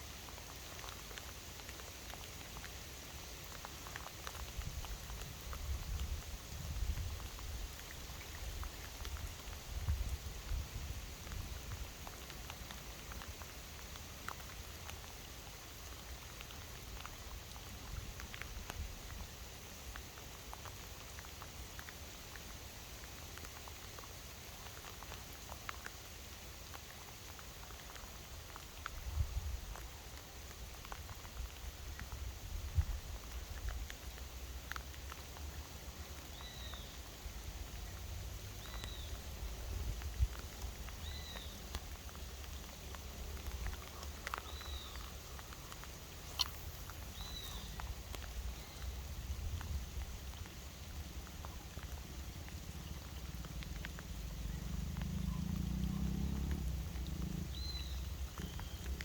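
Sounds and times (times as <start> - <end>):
rain pattering: 0.0 - 59.0
light ticks: 0.1 - 59.0
bird whistling call: 46.3 - 47.8.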